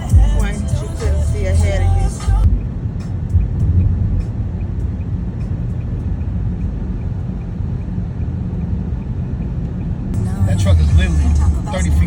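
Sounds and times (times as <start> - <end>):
road and engine rumble: 0.0 - 12.0
faint regular ticking: 2.4 - 10.2.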